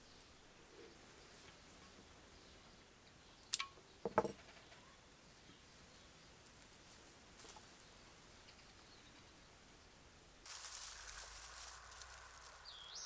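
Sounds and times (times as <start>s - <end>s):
short rattle of knocks: 4.0s - 4.6s.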